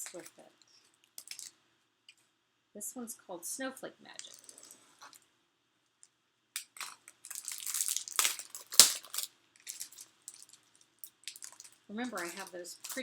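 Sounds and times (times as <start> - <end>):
packaging crinkling and rustling: 6.8 - 13.0.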